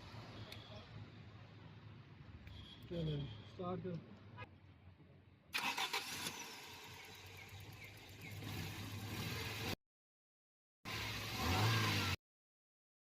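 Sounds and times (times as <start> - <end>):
car engine cranking and starting: 5.6 - 9.8.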